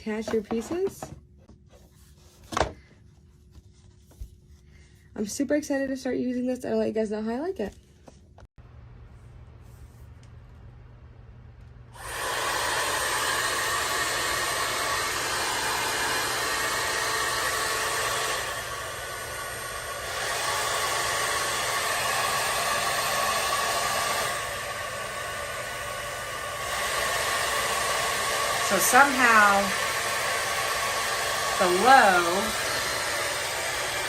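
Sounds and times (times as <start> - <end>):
hair dryer brush fan whirring: 8.6 - 34.0.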